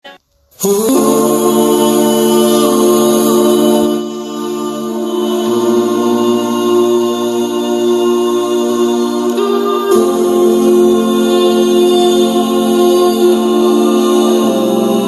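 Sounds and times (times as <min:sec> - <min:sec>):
a cappella vocal harmonies: 0:00.0 - 0:15.0.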